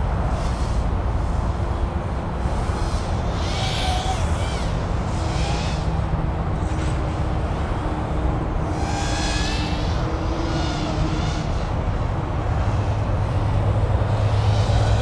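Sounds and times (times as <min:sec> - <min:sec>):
drone motors whining: 0:00.4 - 0:06.7, 0:08.5 - 0:11.8.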